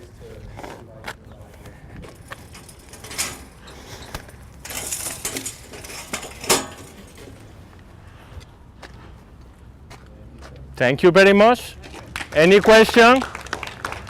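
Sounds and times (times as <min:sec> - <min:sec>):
metal bicycle frame clinking and rattling: 0:02.0 - 0:07.5
loud metal clank: 0:04.6 - 0:07.3.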